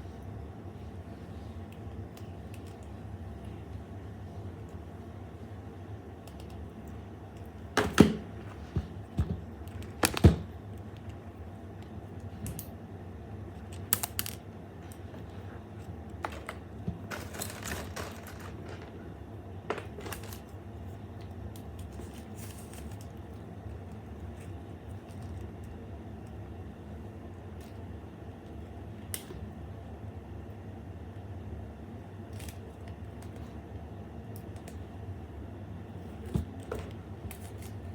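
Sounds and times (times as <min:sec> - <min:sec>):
steady low hum: 0:00.0 - 0:37.9
small hard objects clicking and knocking: 0:16.2 - 0:19.0.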